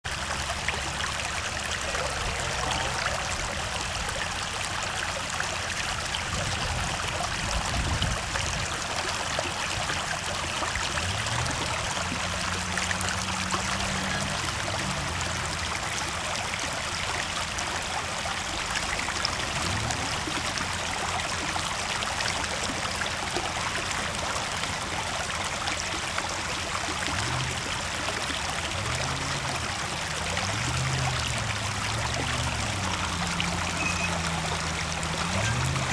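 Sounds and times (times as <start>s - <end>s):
water rushing: 0.0s - 35.9s.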